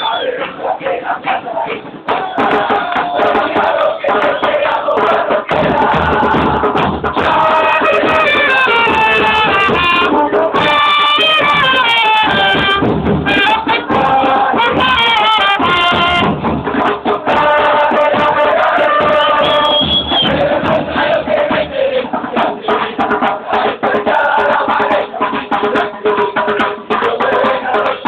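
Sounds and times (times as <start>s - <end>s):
crowd singing chant: 0.0s - 11.7s, 13.3s - 28.0s
band melody: 0.6s - 22.5s.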